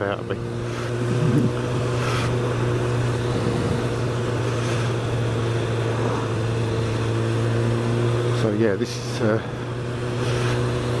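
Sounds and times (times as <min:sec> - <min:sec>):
motorcycle engine cruising: 0:00.0 - 0:11.0
wind and road noise: 0:00.0 - 0:11.0.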